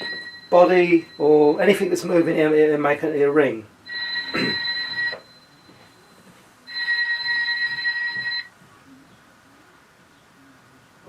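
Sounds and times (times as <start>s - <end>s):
toy telephone ringing: 0.0s - 1.3s, 3.9s - 5.5s, 6.7s - 8.5s.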